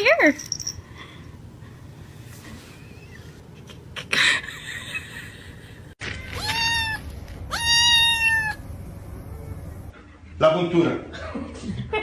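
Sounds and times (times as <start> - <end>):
cat meowing: 6.3 - 8.6.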